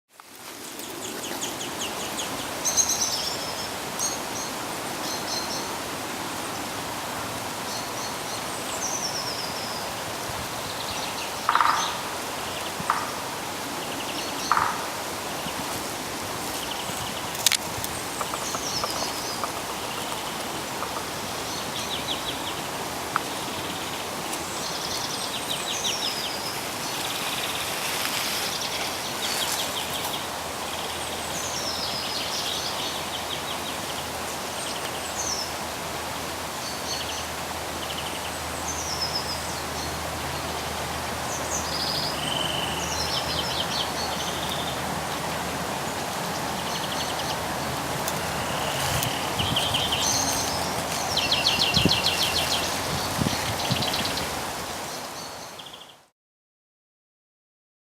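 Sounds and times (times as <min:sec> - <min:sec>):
background rush of noise: 0:00.2 - 0:56.0
songbirds singing: 0:07.5 - 0:15.8, 0:16.5 - 0:27.7, 0:36.4 - 0:56.1.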